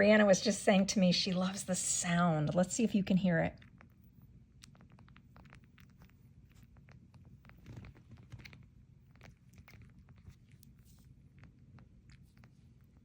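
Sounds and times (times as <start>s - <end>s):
puppies suckling: 3.5s - 13.0s.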